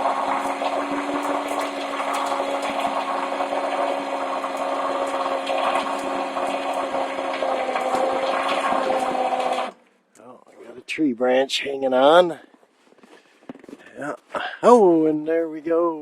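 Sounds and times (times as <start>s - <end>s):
electric winch motor humming: 0.0s - 9.7s.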